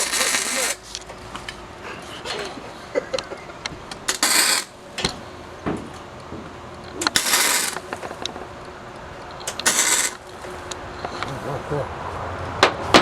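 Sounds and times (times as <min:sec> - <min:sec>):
welding arc crackle: 0:00.0 - 0:01.0, 0:03.9 - 0:04.8, 0:06.9 - 0:10.8.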